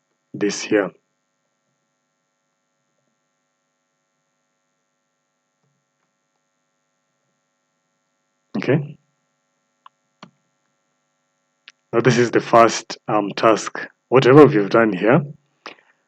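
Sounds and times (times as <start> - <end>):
faint electrical hum: 0.0 - 16.0
person speaking a word: 0.4 - 0.9, 8.6 - 8.9, 12.0 - 15.3.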